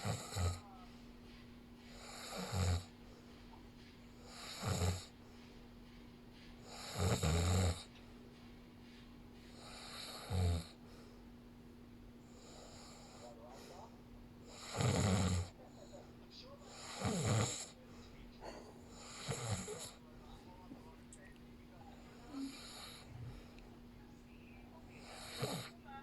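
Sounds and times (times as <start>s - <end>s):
person snoring: 0.0s - 0.6s, 2.0s - 2.9s, 4.3s - 5.1s, 6.7s - 7.9s, 9.6s - 10.8s, 14.5s - 15.5s, 16.7s - 17.8s, 19.0s - 20.0s, 25.0s - 25.7s.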